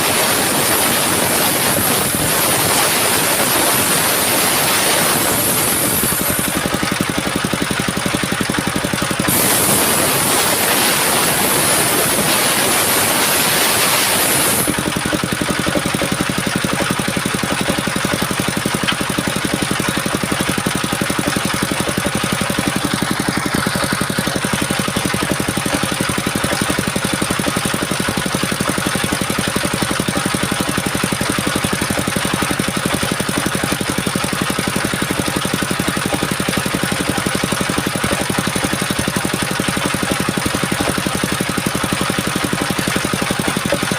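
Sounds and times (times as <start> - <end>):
high hiss: 0.0 - 6.6, 9.3 - 14.8
sawmill engine running: 0.0 - 43.9.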